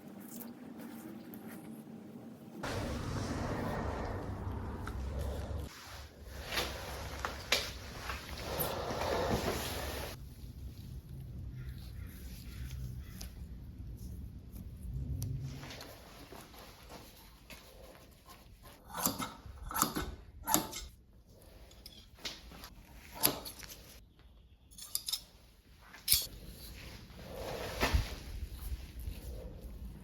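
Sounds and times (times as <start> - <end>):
hand tools scraping and clicking: 18.7 - 21.0, 21.6 - 24.0, 24.7 - 26.6.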